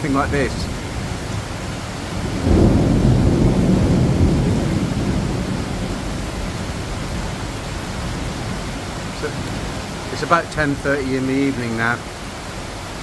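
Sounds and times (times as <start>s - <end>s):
thunder rumble: 0.0s - 12.0s
heavy rain hiss: 0.0s - 13.0s.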